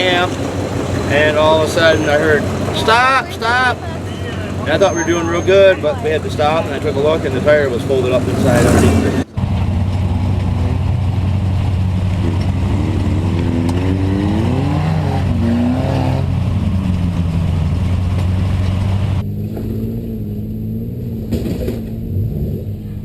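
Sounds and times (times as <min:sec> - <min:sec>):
truck engine humming: 0:00.0 - 0:23.0.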